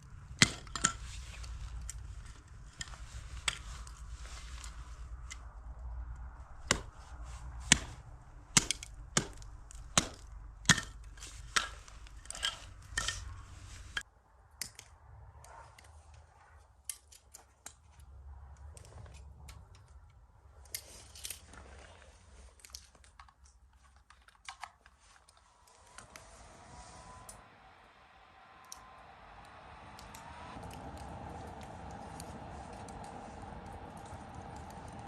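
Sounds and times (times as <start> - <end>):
blade chopping strikes: 6.6 - 7.0, 8.6 - 11.0.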